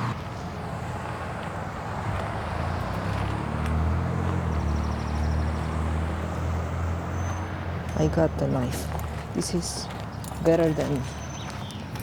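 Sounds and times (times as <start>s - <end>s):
engine humming: 0.0s - 12.0s
outdoor background noise: 0.0s - 12.0s.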